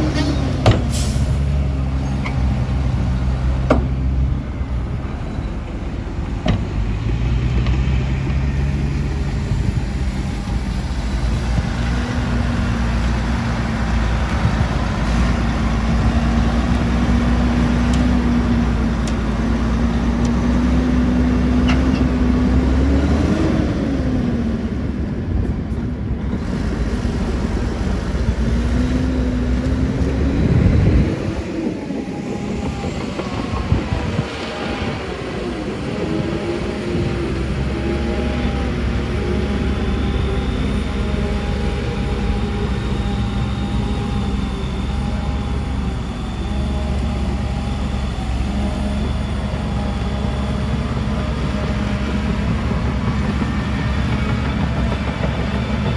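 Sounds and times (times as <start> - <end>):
diesel engine running: 0.0 - 55.9
rising and falling whine: 26.2 - 55.9.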